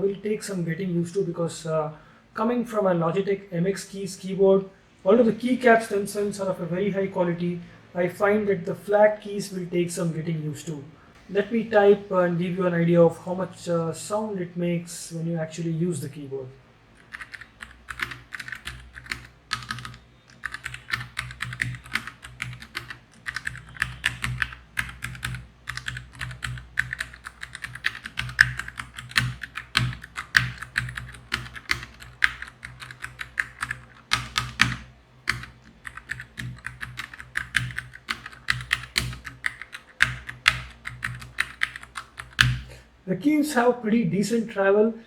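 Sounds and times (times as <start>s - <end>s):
mechanical keyboard typing: 17.0s - 42.7s.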